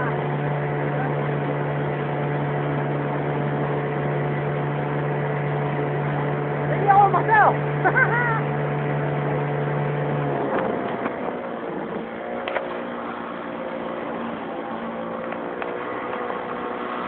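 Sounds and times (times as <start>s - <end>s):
outboard motor running: 0.0s - 17.0s.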